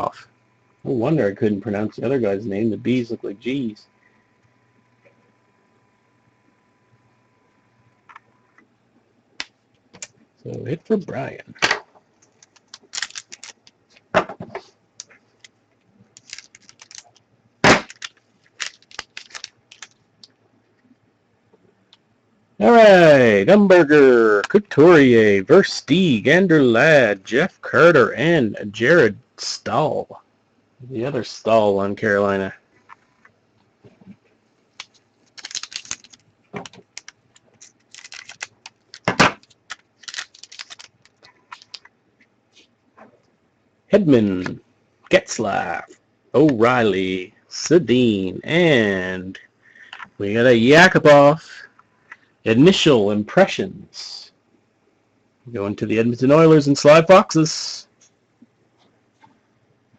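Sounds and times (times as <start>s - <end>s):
cards clicking and snapping: 12.2s - 14.1s, 15.0s - 20.0s, 34.8s - 41.9s.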